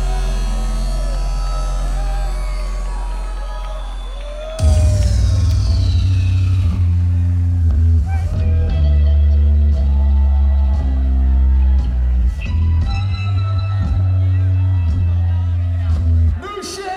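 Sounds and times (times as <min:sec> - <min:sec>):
electronic dance music: 0:00.0 - 0:09.0.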